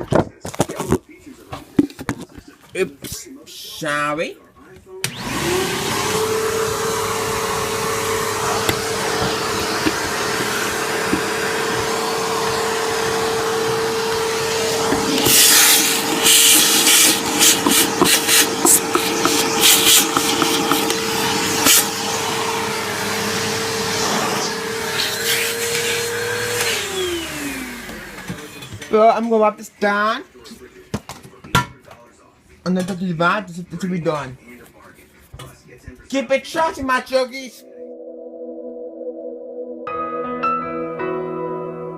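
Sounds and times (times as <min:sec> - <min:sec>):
vacuum cleaner motor whine: 0:05.0 - 0:28.9.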